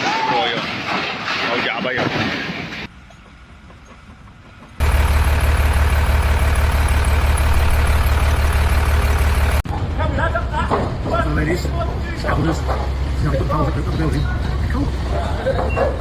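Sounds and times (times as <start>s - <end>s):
heavy machine droning: 4.8s - 9.6s
strong low hum: 4.8s - 9.6s.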